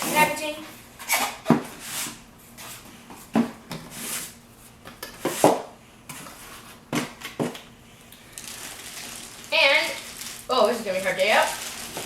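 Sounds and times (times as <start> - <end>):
packaging rustle: 8.3 - 12.0.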